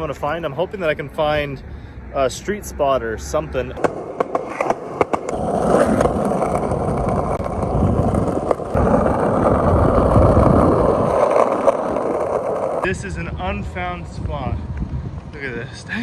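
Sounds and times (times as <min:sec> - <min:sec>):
skateboard clicks: 0:03.8 - 0:12.8
skateboard wheels rolling: 0:03.8 - 0:13.0.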